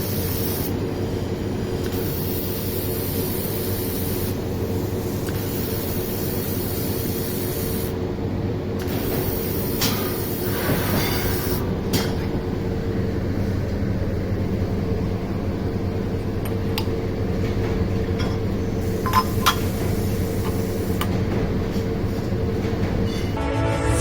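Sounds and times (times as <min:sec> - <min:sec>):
factory machinery humming: 0:00.0 - 0:24.0.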